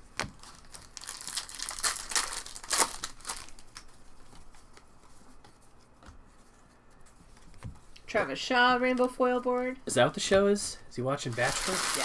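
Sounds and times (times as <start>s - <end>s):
wrapper tearing and crinkling: 0.4s - 3.9s, 11.3s - 12.0s.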